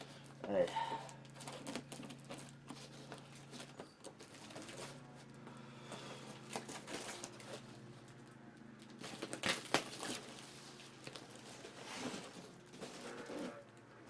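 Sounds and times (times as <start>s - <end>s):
steady low hum: 0.0s - 14.0s
packing crackles and knocks: 1.2s - 8.2s, 8.8s - 14.0s
cardboard box rustling and scraping: 9.0s - 13.6s.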